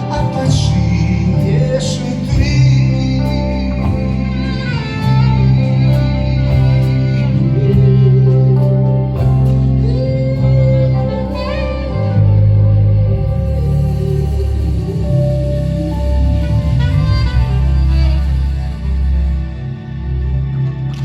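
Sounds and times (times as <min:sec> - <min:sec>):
live band playing instrumental: 0:00.0 - 0:21.0.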